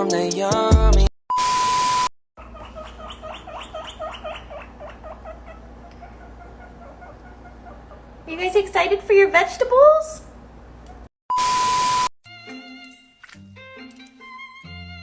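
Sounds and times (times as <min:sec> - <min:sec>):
small animal chirping calls: 0:02.4 - 0:08.2.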